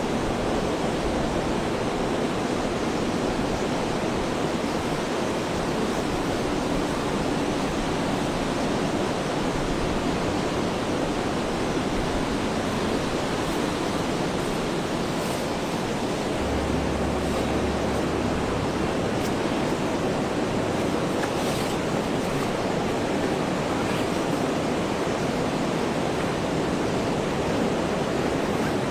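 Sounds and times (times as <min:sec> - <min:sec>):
heavy rain falling: 0:10.8 - 0:28.9.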